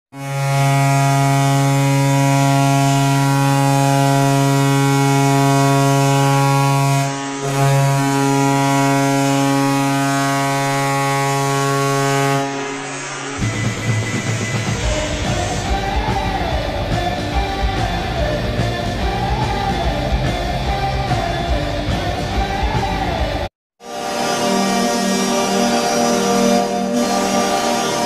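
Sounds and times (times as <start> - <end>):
goal horn blast: 0.1 - 15.8, 23.8 - 28.0.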